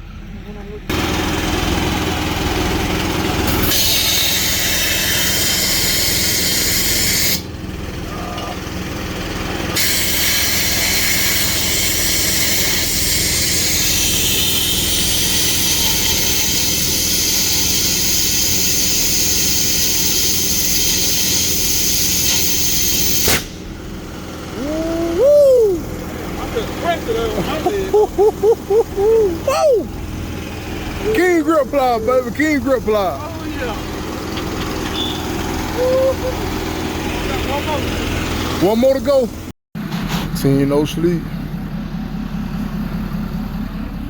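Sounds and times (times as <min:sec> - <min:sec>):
engine humming: 0:00.0 - 0:44.0
compressed air hissing: 0:15.0 - 0:23.8.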